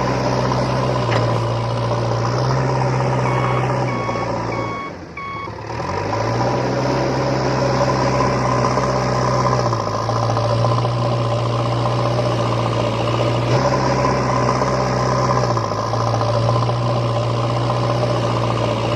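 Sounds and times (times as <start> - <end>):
heavy vehicle engine idling: 0.0 - 5.8.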